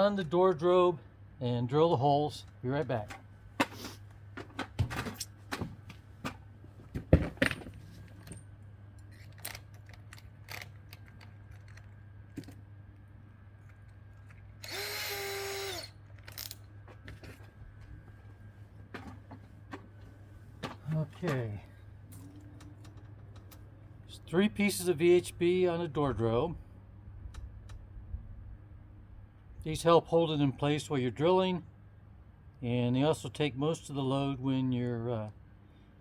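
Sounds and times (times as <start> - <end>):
handling knocks and clicks: 2.4 - 12.6
power drill spinning: 14.6 - 16.6.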